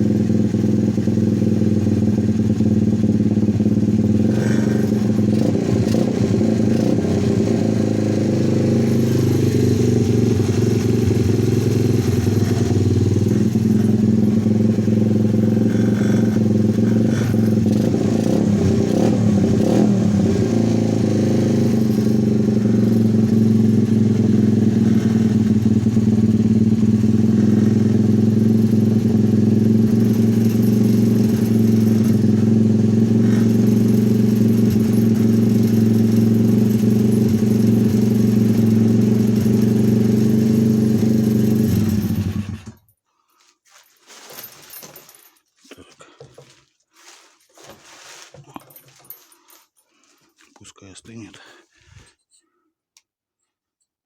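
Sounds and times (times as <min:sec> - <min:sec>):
motorcycle engine idling: 0:00.0 - 0:42.9.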